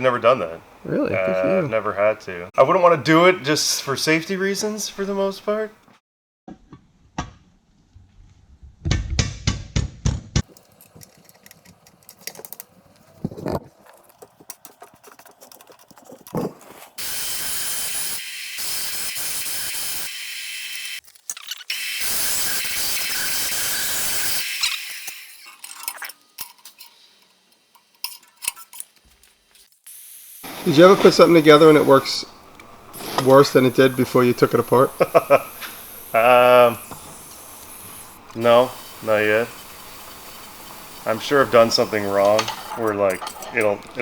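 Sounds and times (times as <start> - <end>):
hissing air bursts: 17.0 - 20.2, 29.8 - 43.0
clicks and metal knocks: 42.2 - 44.0.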